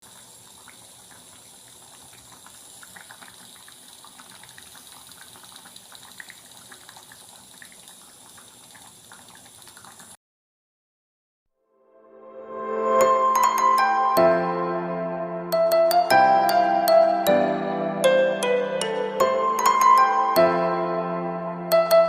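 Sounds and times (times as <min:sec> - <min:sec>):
popping and bubbling crackles: 0:00.1 - 0:10.2.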